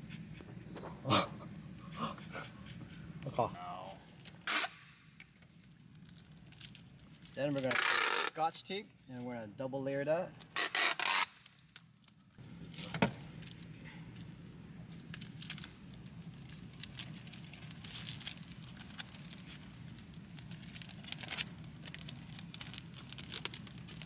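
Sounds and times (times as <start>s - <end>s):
steady low hum: 0.0s - 24.0s
tape crinkling and tearing: 4.0s - 8.5s, 10.4s - 24.0s.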